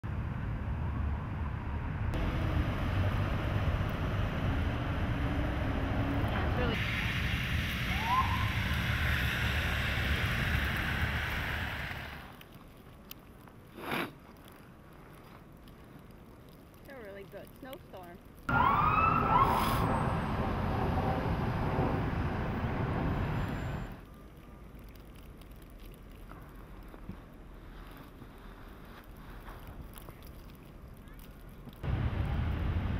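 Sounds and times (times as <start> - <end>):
low street rumble: 0.0 - 32.9
bright hiss: 6.7 - 12.3.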